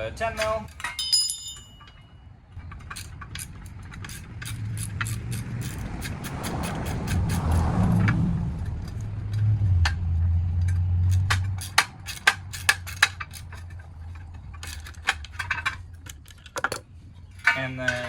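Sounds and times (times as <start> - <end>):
hand tools clinking on metal: 0.2 - 8.1, 10.7 - 18.0
low rumble: 2.5 - 16.1.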